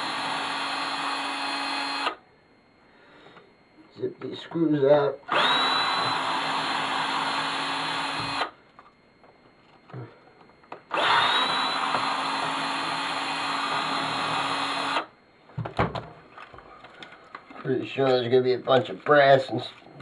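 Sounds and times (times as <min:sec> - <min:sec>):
power drill motor whine: 0:00.0 - 0:02.2, 0:05.3 - 0:08.9, 0:10.7 - 0:15.2.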